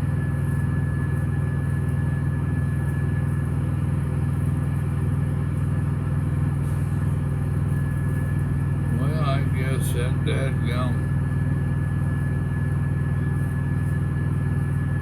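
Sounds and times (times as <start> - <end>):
diesel engine idling: 8.4 - 11.8.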